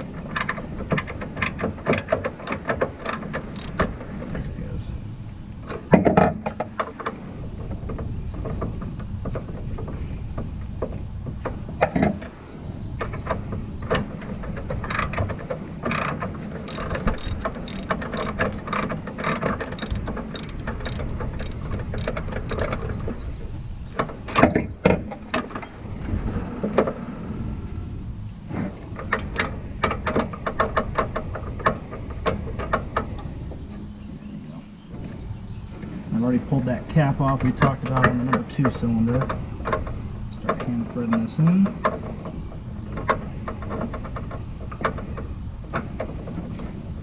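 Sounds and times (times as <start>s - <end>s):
ratchet wrench clicking: 3.0s - 3.9s, 15.8s - 22.8s.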